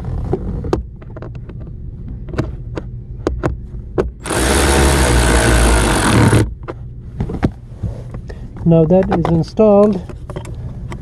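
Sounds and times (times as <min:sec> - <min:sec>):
power driver running: 0:04.2 - 0:06.5.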